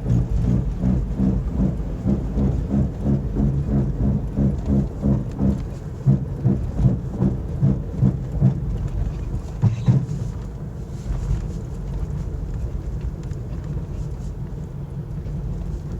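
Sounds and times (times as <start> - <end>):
rhythmic wheel bearing rumble: 0.0 - 10.5.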